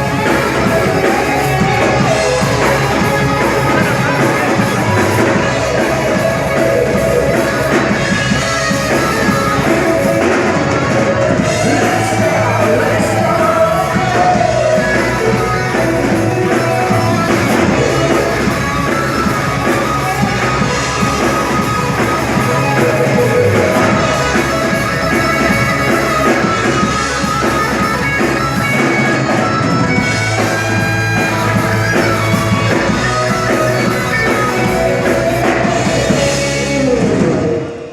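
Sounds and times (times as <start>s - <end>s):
person singing: 0.0s - 18.7s
rock band playing live: 0.0s - 37.9s.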